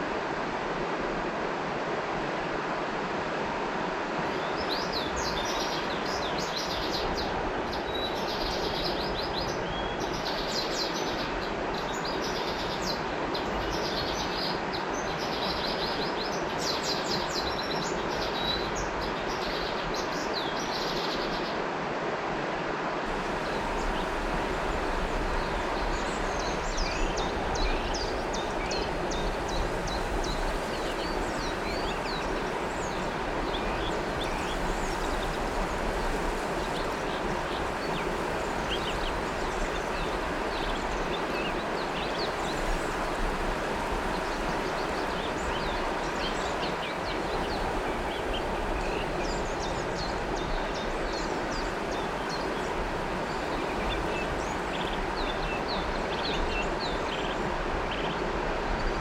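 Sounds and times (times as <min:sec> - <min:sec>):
river flowing: 0:00.0 - 0:59.0
birds chirping: 0:23.1 - 0:58.9.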